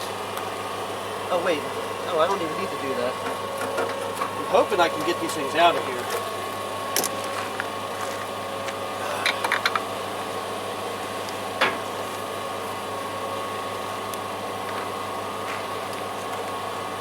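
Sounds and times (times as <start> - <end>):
generator humming: 0.0 - 17.0.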